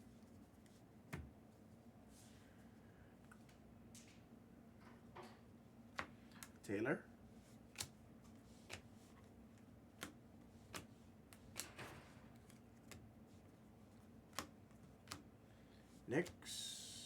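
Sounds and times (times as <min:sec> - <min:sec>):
low room hum: 0:00.0 - 0:17.0
cards clicking and tapping: 0:07.6 - 0:13.1, 0:14.0 - 0:15.3.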